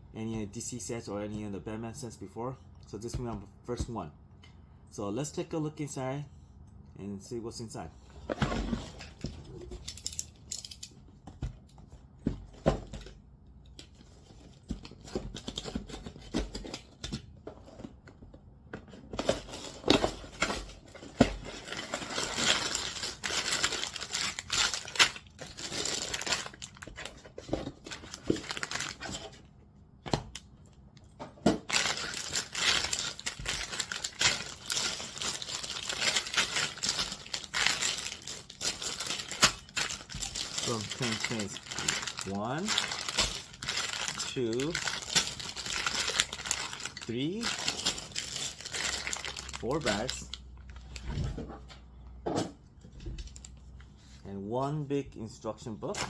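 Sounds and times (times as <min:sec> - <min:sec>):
plastic bags crinkling: 0:21.4 - 0:27.0, 0:27.9 - 0:29.0, 0:31.6 - 0:50.8.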